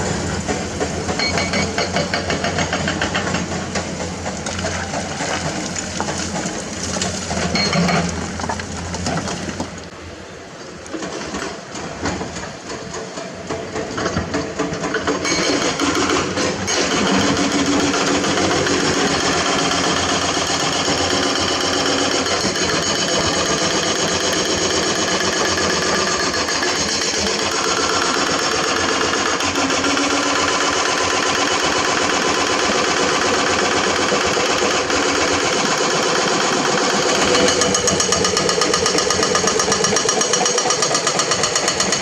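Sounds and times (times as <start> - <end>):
hydraulic breaker hammering rock: 0.1 - 8.6, 14.0 - 42.0
diesel engine running: 14.9 - 40.7.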